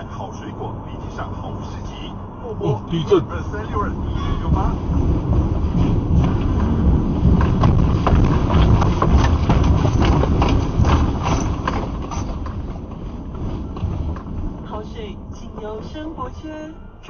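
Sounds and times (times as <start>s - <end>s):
earthquake low rumble: 2.8s - 16.4s
objects rattling and knocking: 4.6s - 14.6s.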